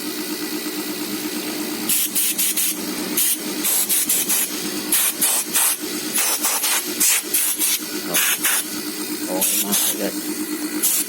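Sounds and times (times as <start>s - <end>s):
compressor humming: 0.0s - 11.0s
compressed air hissing spurts: 1.8s - 10.1s, 10.8s - 11.0s.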